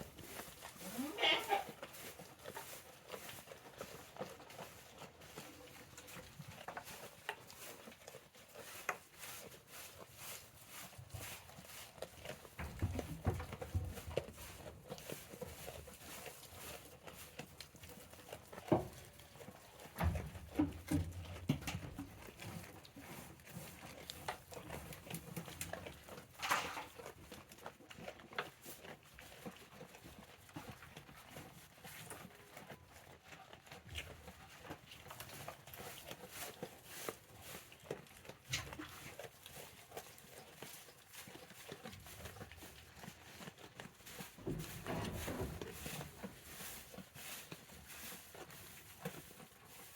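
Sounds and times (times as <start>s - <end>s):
goat hoof clicks and knocks: 11.2s - 49.6s.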